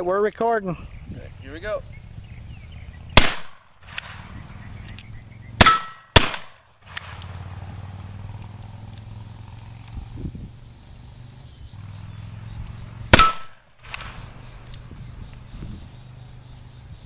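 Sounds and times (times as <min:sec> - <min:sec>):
pistol shots: 0:03.2 - 0:04.3, 0:05.6 - 0:07.4, 0:13.1 - 0:14.3.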